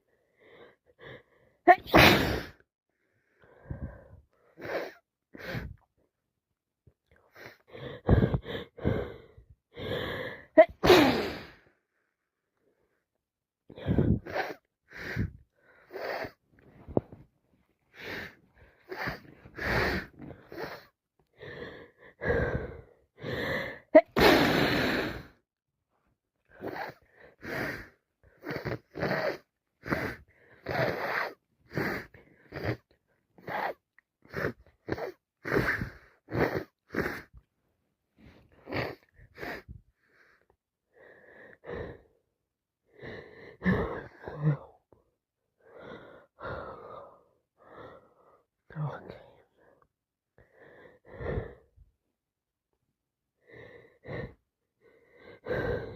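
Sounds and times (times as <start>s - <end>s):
gasping wheezy breaths: 0.0s - 5.9s, 7.1s - 11.8s, 13.7s - 17.2s, 17.9s - 25.4s, 26.5s - 37.5s, 38.2s - 42.2s, 42.9s - 45.0s, 45.6s - 51.8s, 53.4s - 55.9s
woman sneezing: 1.7s - 2.6s, 10.6s - 11.4s.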